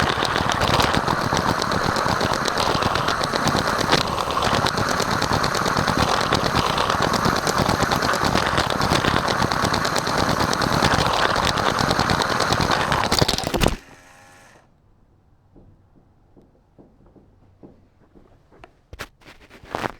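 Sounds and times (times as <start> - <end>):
faint ticks: 0.0 - 13.2
toy train wheels clattering: 0.0 - 14.4
motor whine: 0.0 - 14.7.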